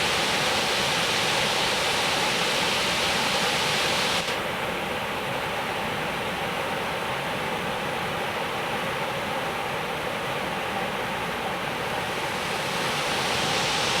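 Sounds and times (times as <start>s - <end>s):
waterfall rushing: 12.0s - 14.0s.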